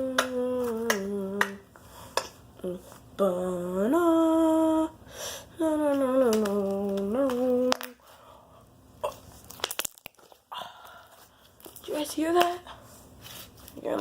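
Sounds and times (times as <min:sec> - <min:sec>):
boy humming: 0:00.0 - 0:01.6, 0:02.6 - 0:08.0.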